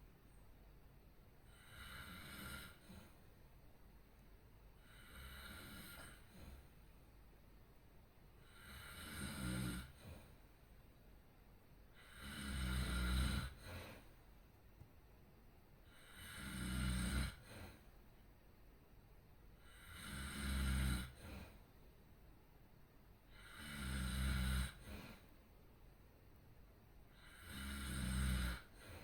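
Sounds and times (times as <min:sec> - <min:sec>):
person snoring: 0:01.5 - 0:03.0, 0:04.8 - 0:06.6, 0:08.4 - 0:10.1, 0:12.0 - 0:13.7, 0:15.9 - 0:17.5, 0:19.6 - 0:21.5, 0:23.3 - 0:25.2, 0:27.2 - 0:29.0
soft breath out: 0:04.8 - 0:06.9, 0:13.6 - 0:14.3, 0:21.2 - 0:21.7, 0:24.8 - 0:25.4, 0:28.7 - 0:29.0.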